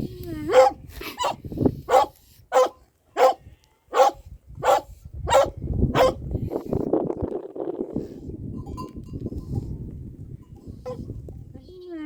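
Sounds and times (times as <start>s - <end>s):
dog barking: 0.5s - 6.2s.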